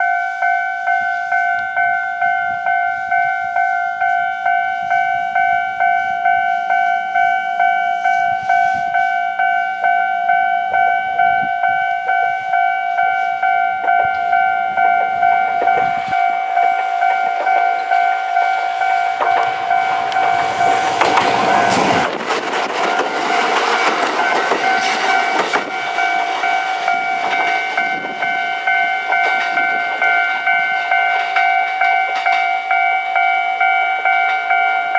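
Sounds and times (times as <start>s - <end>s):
level-crossing warning bell: 0.0s - 34.9s
train wheels clattering over rails: 14.9s - 32.9s.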